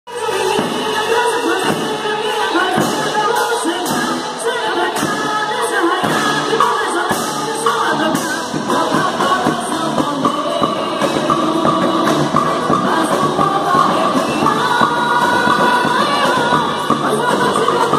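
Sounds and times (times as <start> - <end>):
singing with band: 0.1 - 17.9
drum strikes: 6.0 - 17.9.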